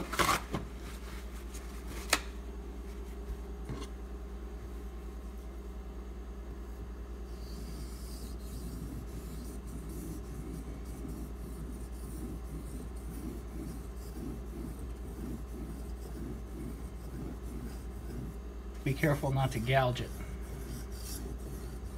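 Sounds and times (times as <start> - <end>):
steady low hum: 0.0 - 21.9
knife scraping on whetstone: 7.4 - 18.4, 20.1 - 21.9.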